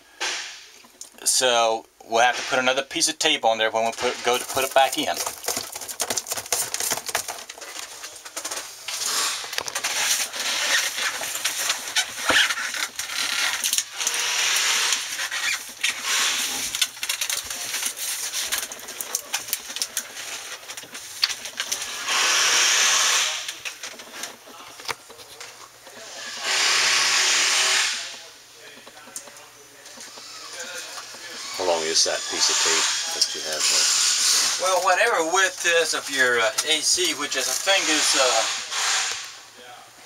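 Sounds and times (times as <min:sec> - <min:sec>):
foil tape crinkling: 0:03.8 - 0:26.5, 0:29.0 - 0:38.5
tape pulled off roll hiss: 0:08.8 - 0:16.9, 0:20.1 - 0:23.7, 0:26.0 - 0:28.3, 0:36.0 - 0:39.5.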